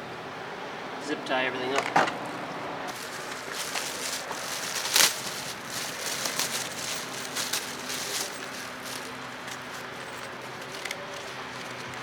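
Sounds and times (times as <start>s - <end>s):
handling rustling and clicks: 2.9s - 12.0s.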